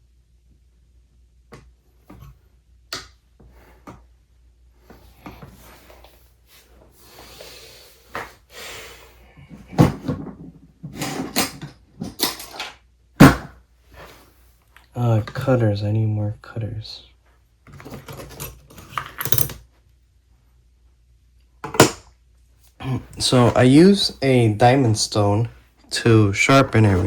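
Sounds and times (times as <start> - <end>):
tools clicking and knocking: 11.0 - 12.8, 17.7 - 19.6
rustling scrape: 13.8 - 14.5.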